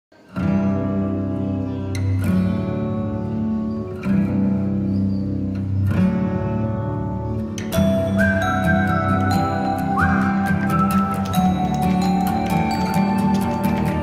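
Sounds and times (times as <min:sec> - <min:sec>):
guitar chords strummed: 0:00.2 - 0:14.0.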